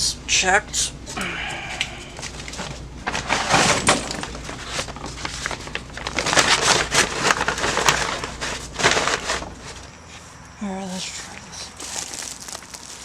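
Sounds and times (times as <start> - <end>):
rustling and knocking of objects: 11.8 - 13.0.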